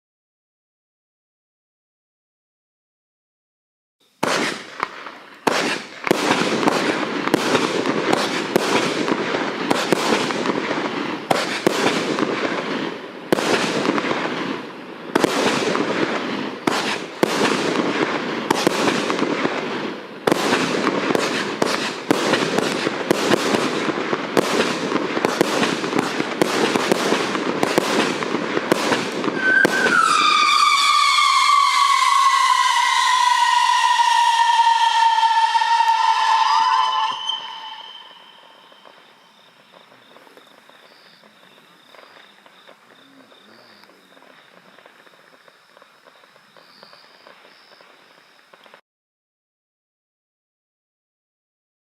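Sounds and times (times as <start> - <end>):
firework cake firing shots: 4.2 - 39.1
screaming firework whistle: 28.8 - 48.7.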